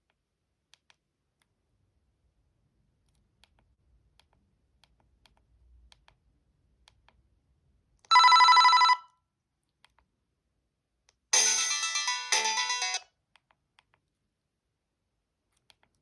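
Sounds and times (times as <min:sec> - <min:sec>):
buzzy electronic ringtone: 0:08.1 - 0:09.0, 0:11.4 - 0:13.0.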